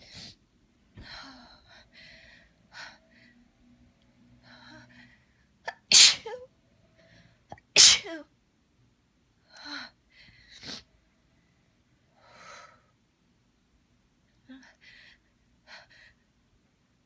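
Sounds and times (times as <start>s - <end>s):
quiet breathing: 0.0s - 5.6s, 6.8s - 7.5s, 9.4s - 13.0s
person sneezing: 5.7s - 6.4s, 7.6s - 8.2s.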